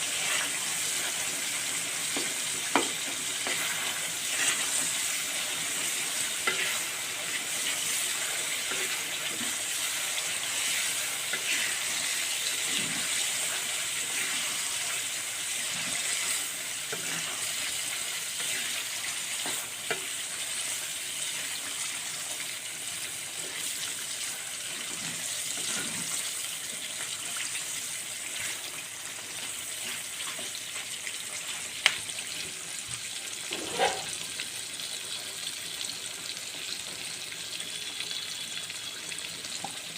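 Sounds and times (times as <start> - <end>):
food sizzling in hot oil: 0.0 - 39.9
spatula scraping and tapping: 2.1 - 3.8, 33.5 - 34.1.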